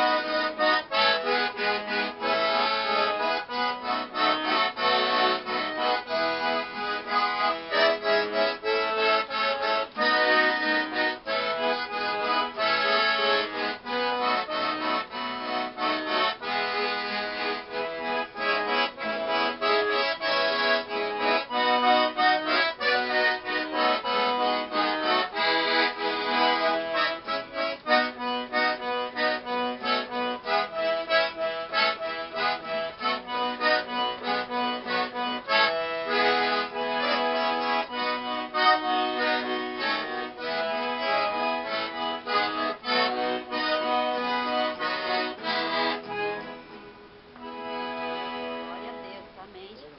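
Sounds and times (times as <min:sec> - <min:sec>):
acoustic guitar strumming: 0:00.0 - 0:49.5
accordion playing lively tune: 0:00.0 - 0:49.9.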